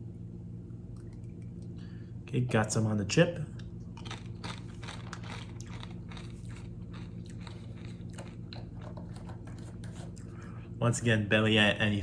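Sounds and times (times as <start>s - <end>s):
steady low hum: 0.0s - 12.0s
person crunching a chip: 3.9s - 10.2s.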